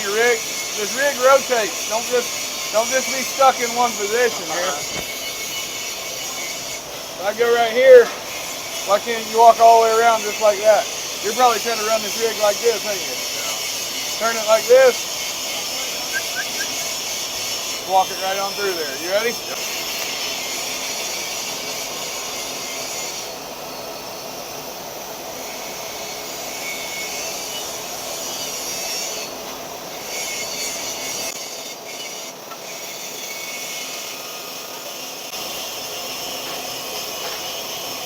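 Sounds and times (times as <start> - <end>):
welding arc hissing: 0.0 - 38.0.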